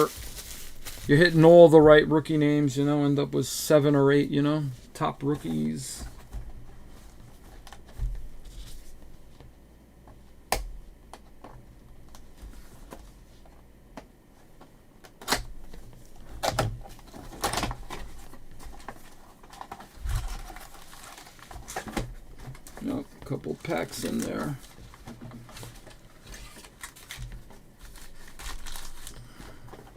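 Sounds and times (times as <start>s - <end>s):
card packs rustling: 0.0s - 9.0s, 15.2s - 29.9s.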